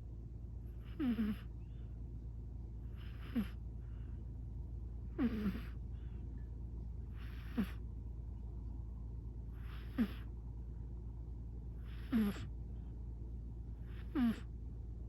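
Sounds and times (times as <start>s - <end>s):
steady low hum: 0.0s - 15.0s
cat snoring: 0.8s - 1.5s, 2.9s - 3.6s, 5.1s - 5.8s, 7.1s - 7.8s, 9.5s - 10.3s, 11.8s - 12.5s, 13.8s - 14.5s.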